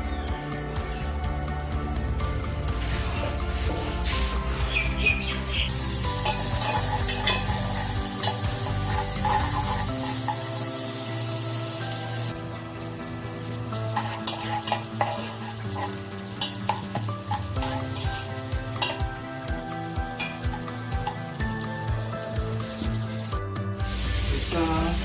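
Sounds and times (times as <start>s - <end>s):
background music: 0.0s - 25.0s
food sizzling in a pot: 5.5s - 25.0s
spoon scraping a pot: 6.2s - 10.5s, 13.9s - 19.1s.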